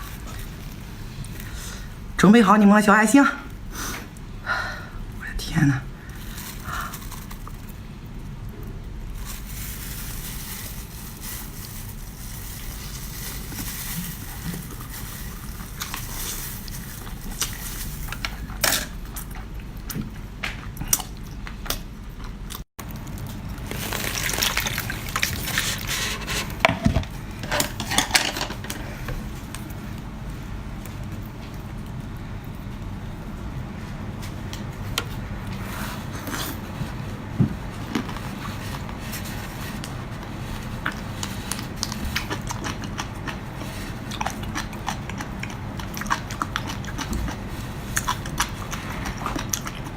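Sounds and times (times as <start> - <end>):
wet mouth eating sounds: 16.7 - 22.6, 40.7 - 49.9.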